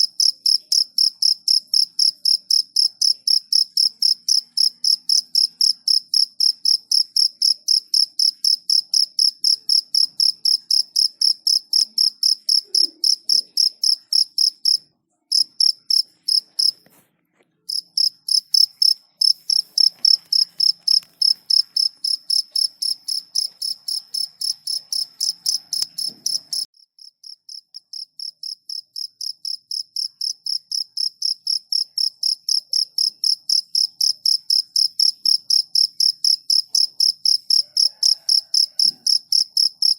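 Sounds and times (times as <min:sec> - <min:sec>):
cricket chirping: 0:00.0 - 0:16.8, 0:17.7 - 0:39.9.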